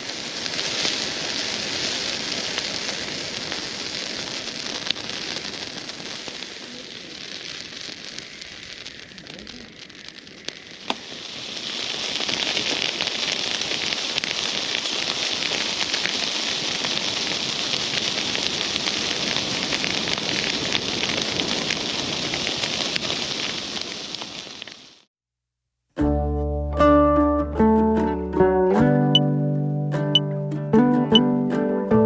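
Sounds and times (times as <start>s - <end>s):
bonfire crackling: 0.0s - 25.1s, 26.0s - 32.0s.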